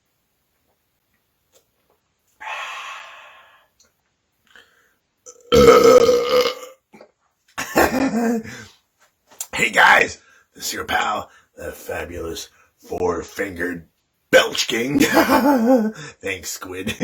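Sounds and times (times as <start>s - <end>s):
man belching loudly: 5.3s - 6.8s.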